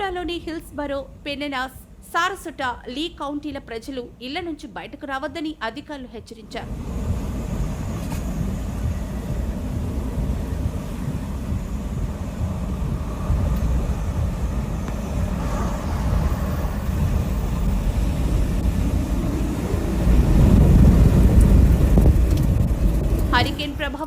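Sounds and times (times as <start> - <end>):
strong wind buffeting microphone: 6.6 - 24.0.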